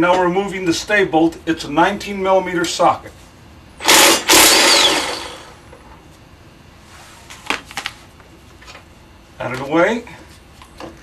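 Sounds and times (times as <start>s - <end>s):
impact wrench running: 3.8s - 5.7s.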